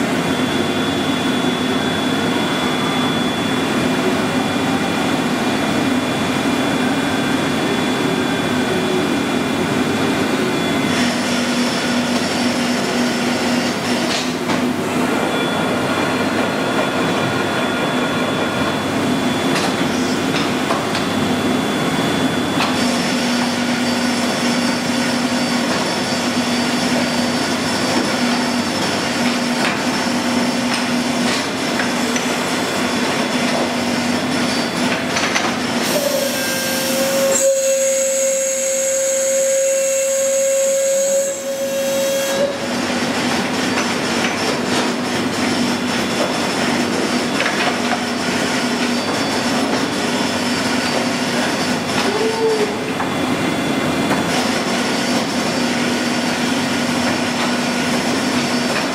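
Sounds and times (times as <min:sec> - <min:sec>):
milling machine hum: 0:00.0 - 0:58.9
steady machine whine: 0:00.0 - 0:58.9.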